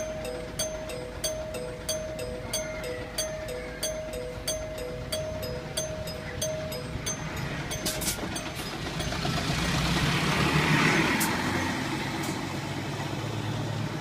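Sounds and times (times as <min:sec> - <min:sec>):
turn signal chime: 0:00.0 - 0:10.4
bus engine running: 0:00.0 - 0:14.0.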